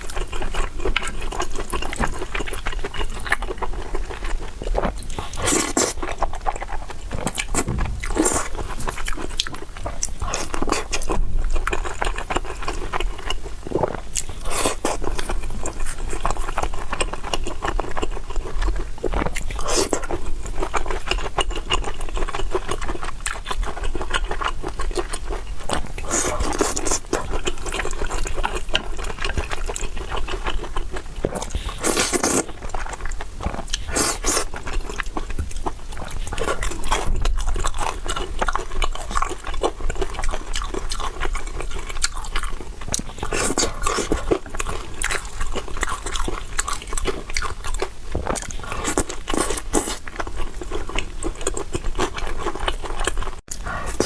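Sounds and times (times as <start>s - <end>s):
wet chewing and mouth clicks: 0.0s - 54.0s.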